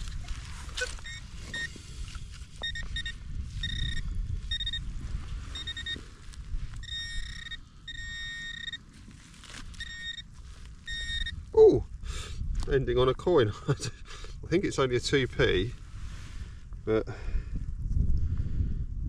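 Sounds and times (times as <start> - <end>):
metal detector pinpointer beeps: 0.2 - 1.8, 2.6 - 8.9, 9.6 - 11.4.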